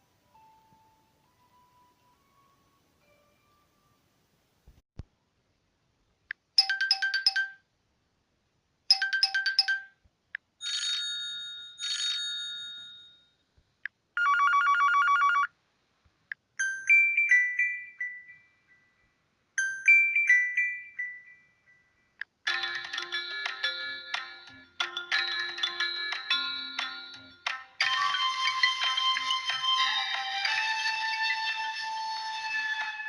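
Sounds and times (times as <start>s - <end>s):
phone ringtones: 14.2s - 15.5s.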